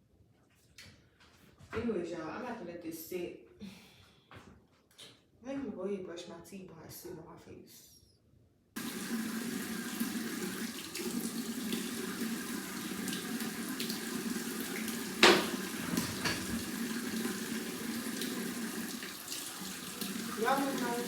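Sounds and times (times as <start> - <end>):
sink tap running: 8.8 - 21.0
sharp knock: 15.2 - 16.4.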